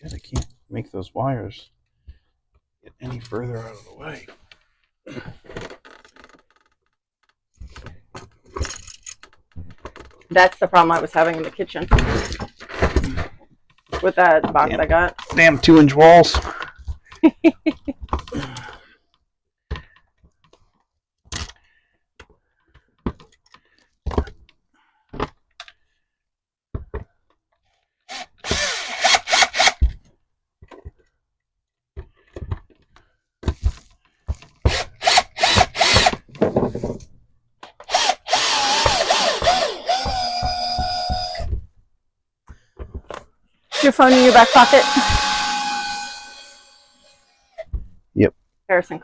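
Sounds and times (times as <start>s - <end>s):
power drill running: 28.1s - 29.8s, 34.7s - 36.2s, 37.8s - 41.5s, 43.7s - 47.6s.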